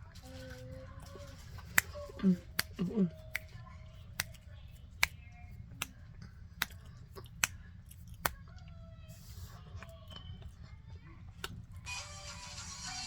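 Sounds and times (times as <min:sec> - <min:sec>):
crisp chewing crunches: 0:05.7 - 0:10.7.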